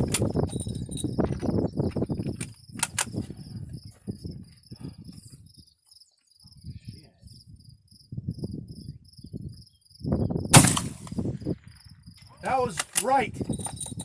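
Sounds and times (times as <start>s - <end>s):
crickets chirping: 0.0s - 14.0s
rifle shot: 10.5s - 11.5s.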